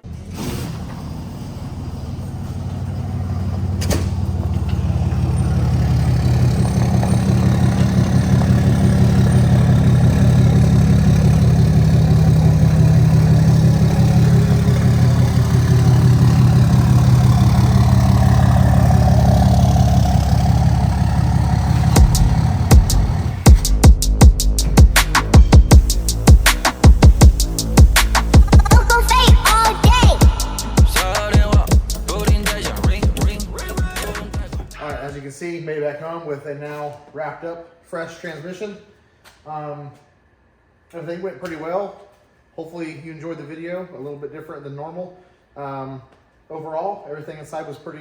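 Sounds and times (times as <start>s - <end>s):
diesel truck engine droning: 0.0s - 35.2s.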